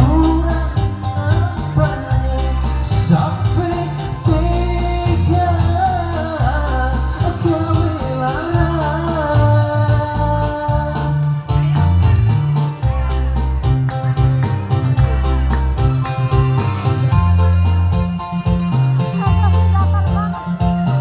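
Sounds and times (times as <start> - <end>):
man singing: 0.0 - 13.6
backing music with beat and bass: 0.0 - 21.0.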